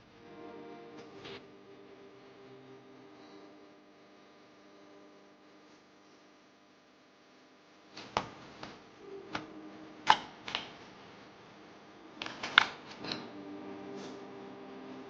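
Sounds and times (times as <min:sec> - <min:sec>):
steady low hum: 0:00.0 - 0:15.0
clicks and taps of packaging: 0:12.2 - 0:13.2.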